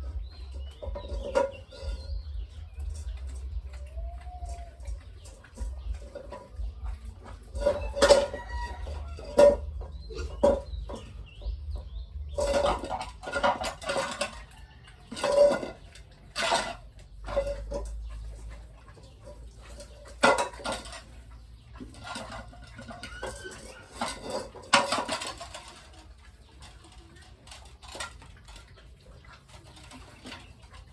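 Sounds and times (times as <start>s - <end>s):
chickens clucking: 0.0s - 30.9s.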